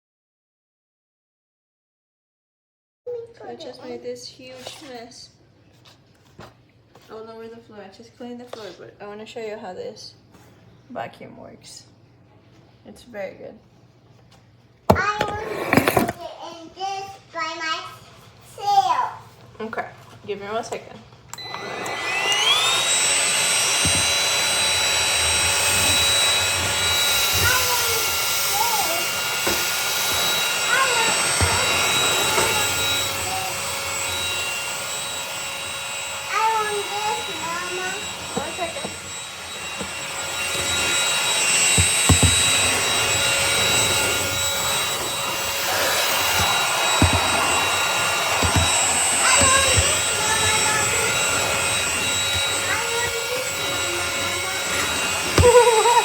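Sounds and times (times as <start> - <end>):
stick vacuum motor whine: 14.9 - 16.2, 21.3 - 56.0.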